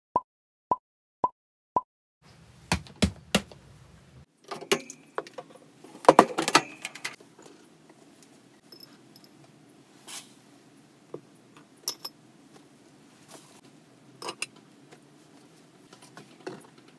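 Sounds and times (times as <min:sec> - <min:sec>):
hard objects knocking and clattering: 0:02.7 - 0:03.6, 0:04.7 - 0:07.2.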